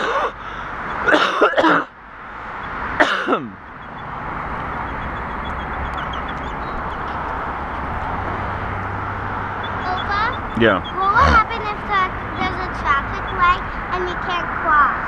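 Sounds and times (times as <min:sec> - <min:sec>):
rushing road noise: 0:00.0 - 0:15.0
short vocal cries: 0:11.1 - 0:11.4.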